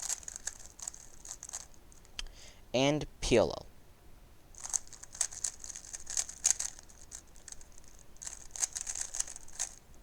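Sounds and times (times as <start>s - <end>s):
puzzle cube plastic clicks: 0.0s - 1.8s, 4.6s - 9.9s.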